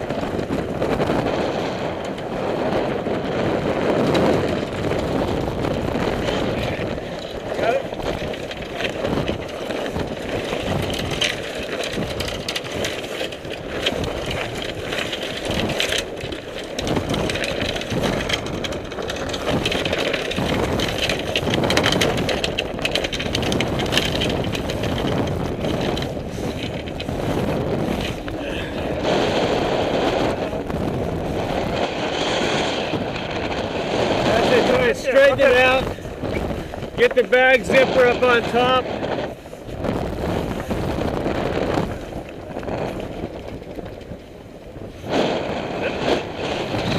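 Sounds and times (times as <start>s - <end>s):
sail cloth flapping: 0.0s - 46.9s
wind buffeting microphone: 0.0s - 46.9s
knocks and clatter: 3.8s - 32.2s.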